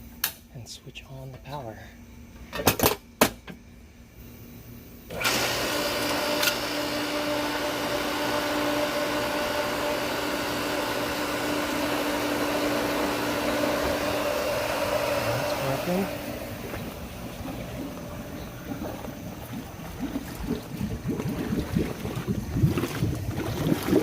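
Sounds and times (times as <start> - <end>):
pump motor humming: 5.1 - 24.0.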